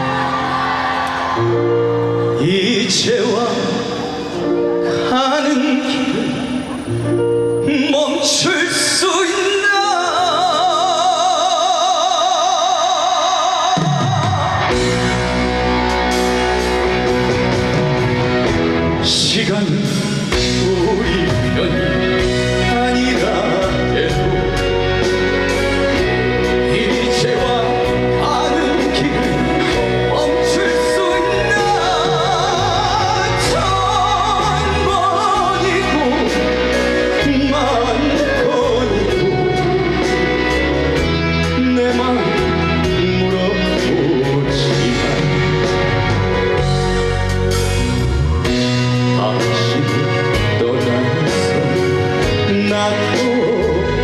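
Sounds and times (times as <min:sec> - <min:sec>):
band backing music: 0:00.0 - 0:54.0
man singing: 0:01.4 - 0:15.4, 0:17.6 - 0:47.2, 0:48.4 - 0:54.0.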